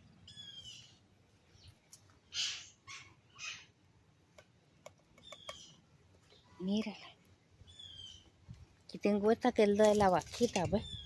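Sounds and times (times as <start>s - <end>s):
birds calling: 0.0s - 3.8s, 4.8s - 8.5s, 10.6s - 11.0s.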